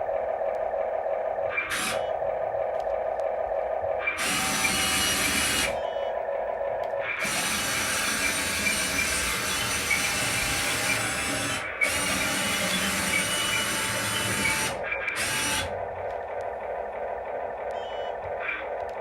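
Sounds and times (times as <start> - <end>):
small electric motors whirring: 4.2 - 5.8, 7.2 - 15.7.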